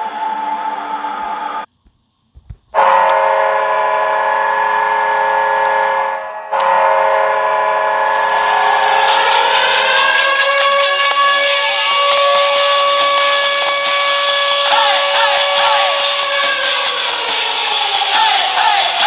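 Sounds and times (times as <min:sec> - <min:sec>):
hockey goal horn blast: 0:02.8 - 0:17.3
music: 0:07.9 - 0:19.0.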